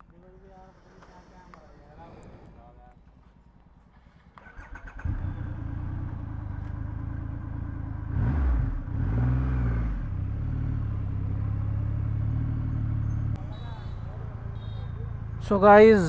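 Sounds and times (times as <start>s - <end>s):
motorcycle engine revving and idling: 2.4s - 15.4s
motorcycle starter cranking: 4.4s - 5.1s.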